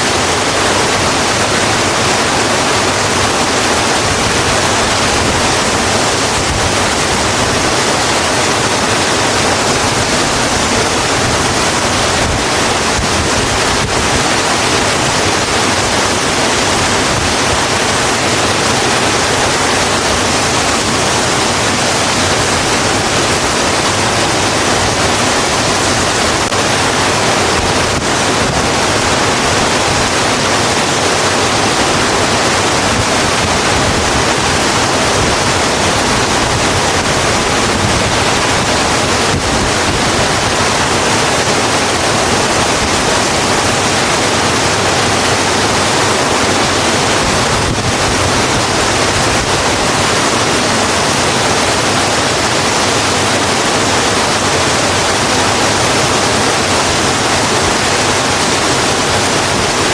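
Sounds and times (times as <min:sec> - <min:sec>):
heavy rain on a road: 0:00.0 - 0:59.9.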